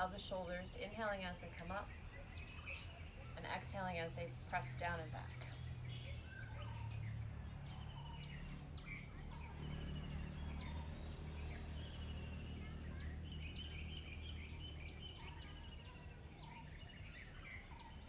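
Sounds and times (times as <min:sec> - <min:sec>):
birds chirping and trilling: 0:05.4 - 0:18.0.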